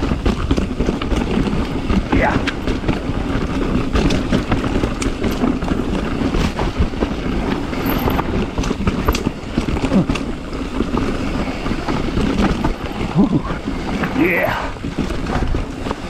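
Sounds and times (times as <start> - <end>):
bike knocking on rocks: 0.0 - 16.0
tyre and trail noise: 0.0 - 16.0.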